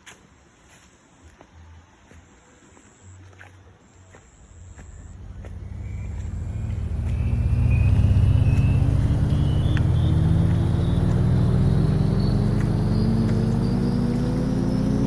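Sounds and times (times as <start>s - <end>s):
faint high whine: 0.0s - 15.0s
vehicle engine: 4.4s - 15.0s.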